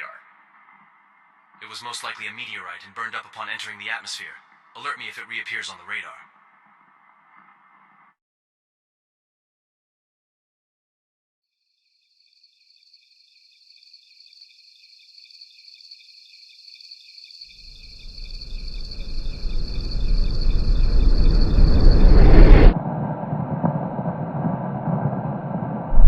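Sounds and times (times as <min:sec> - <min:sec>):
crickets chirping: 0:11.6 - 0:22.8
low meteor rumble: 0:17.8 - 0:26.0.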